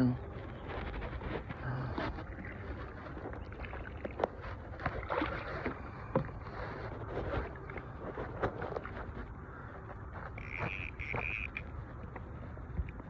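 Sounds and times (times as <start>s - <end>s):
water sloshing and lapping: 0.0s - 13.0s.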